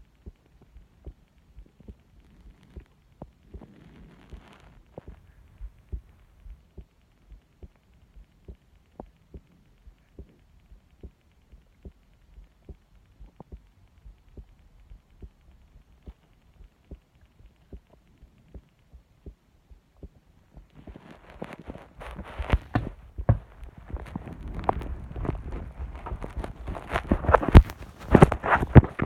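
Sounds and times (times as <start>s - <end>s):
heartbeat thumps: 0.0s - 29.0s.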